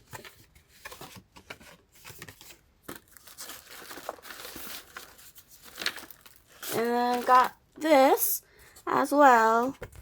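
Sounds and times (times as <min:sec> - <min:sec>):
packaging rustling and crinkling: 0:00.0 - 0:07.6.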